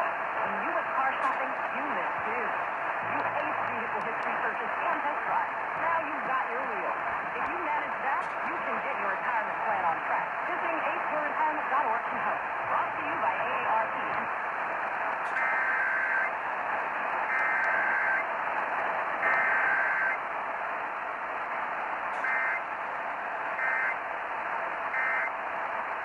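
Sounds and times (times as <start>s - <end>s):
radio hiss: 0.0s - 26.0s
warbling two-tone data bursts: 15.3s - 16.3s, 22.2s - 22.7s, 23.6s - 24.0s.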